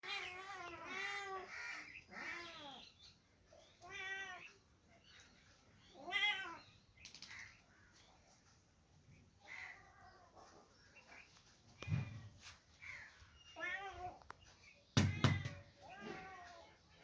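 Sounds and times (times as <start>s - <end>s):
kittens meowing: 0.0s - 2.8s, 15.0s - 16.8s.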